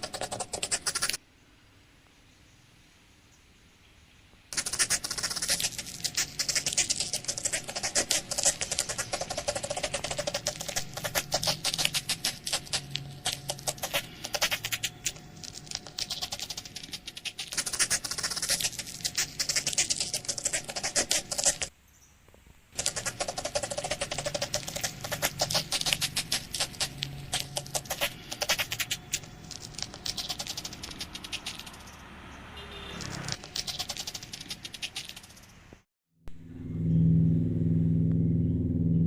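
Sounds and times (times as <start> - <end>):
rapid clicking and scratching: 0.0 - 1.2, 4.5 - 21.7, 22.8 - 32.0, 33.0 - 35.6
faint low hum: 36.3 - 39.0.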